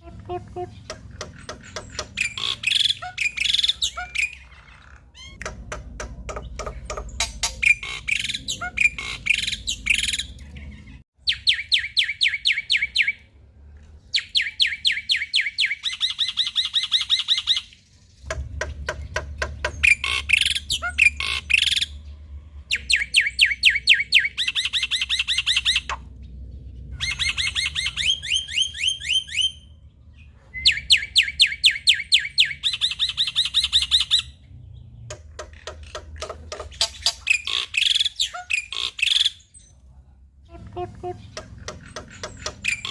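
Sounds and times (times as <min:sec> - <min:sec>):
bird singing harsh notes: 0:00.1 - 0:05.4, 0:06.3 - 0:10.4, 0:14.1 - 0:29.9, 0:40.4 - 0:42.9.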